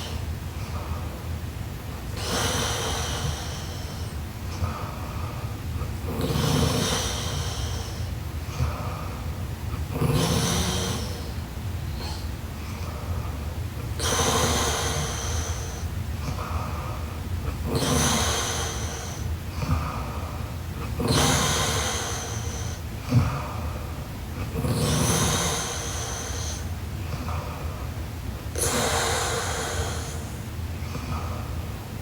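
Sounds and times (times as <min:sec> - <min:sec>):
woman snoring: 0:06.1 - 0:07.8, 0:09.9 - 0:11.4, 0:24.6 - 0:26.7.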